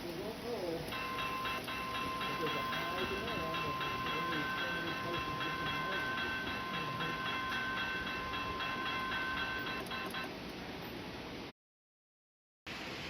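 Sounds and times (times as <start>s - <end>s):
model train motor hum: 0.0s - 10.3s
running gear whine: 0.9s - 10.4s.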